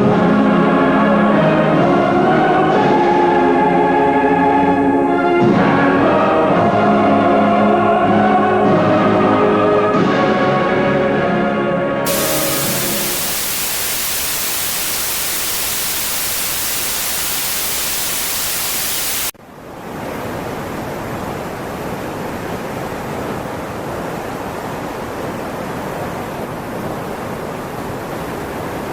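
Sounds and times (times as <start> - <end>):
water rushing: 12.1 - 19.3
static hiss: 12.1 - 19.4.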